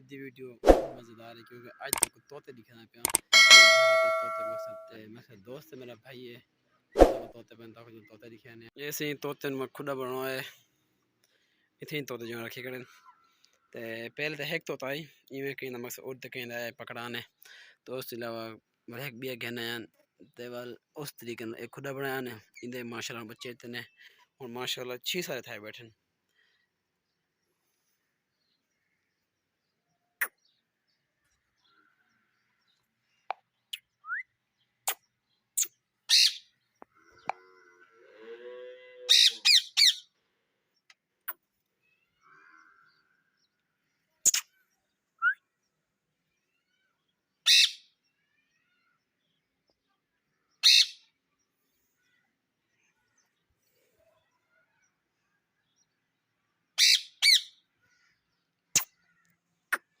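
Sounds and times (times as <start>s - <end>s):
short sharp clicks: 1.9s - 2.1s, 3.0s - 4.9s
parrots chirping and squawking: 36.1s - 36.4s, 39.1s - 40.0s, 47.5s - 47.8s, 50.6s - 51.0s, 56.8s - 57.5s
parrot screeching: 39.1s - 40.0s, 47.5s - 47.8s, 56.8s - 57.4s.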